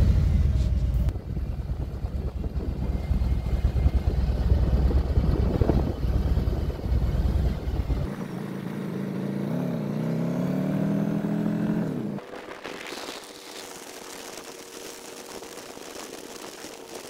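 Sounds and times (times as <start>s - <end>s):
motorcycle engine running: 0.0s - 17.0s
wind rumble on microphone: 0.5s - 8.3s, 12.1s - 17.0s.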